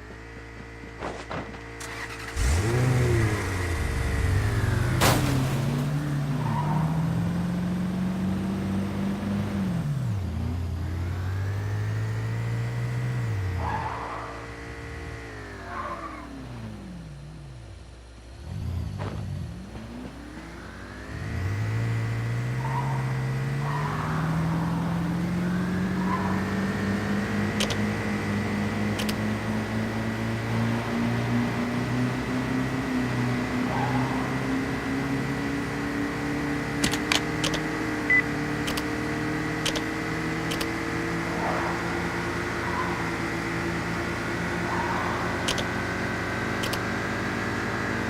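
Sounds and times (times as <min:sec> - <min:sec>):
vehicle engine running: 0:00.0 - 0:48.0
short clicks: 0:29.0 - 0:29.2, 0:36.8 - 0:37.7, 0:38.6 - 0:38.9, 0:39.6 - 0:40.8, 0:45.4 - 0:45.7, 0:46.6 - 0:46.9.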